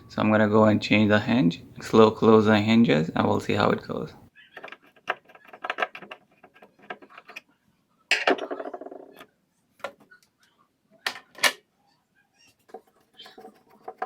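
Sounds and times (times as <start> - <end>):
hinge hardware clicks and knocks: 4.6 - 7.4.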